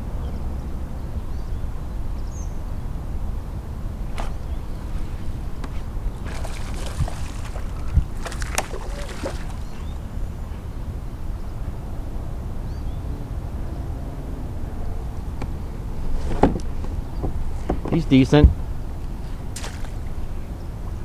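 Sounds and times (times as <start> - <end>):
water splashing and sloshing: 4.1 - 10.6, 15.4 - 21.0.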